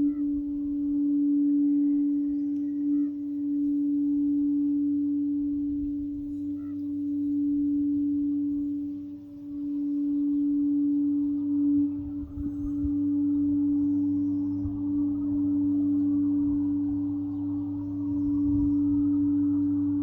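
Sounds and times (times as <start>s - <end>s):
singing bowl low tone: 0.0s - 20.0s.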